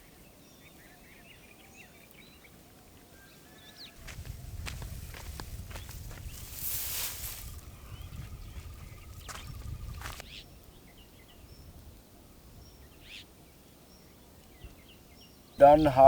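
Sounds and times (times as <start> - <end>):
faint bird chirps: 5.8 - 13.3.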